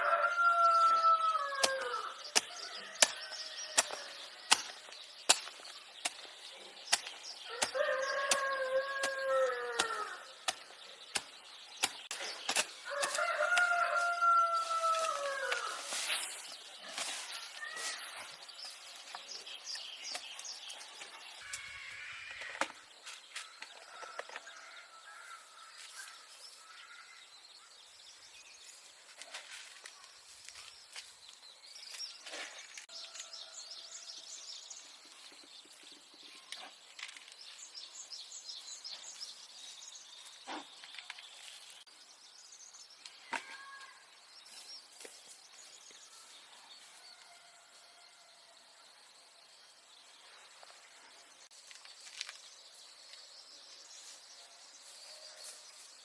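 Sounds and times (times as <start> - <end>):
birds chirping: 0.0 - 24.7.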